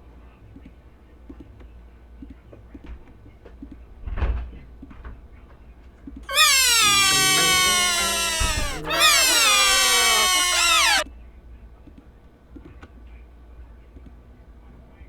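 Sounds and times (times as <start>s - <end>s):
high pitched cartoon crying wail: 6.3s - 11.0s.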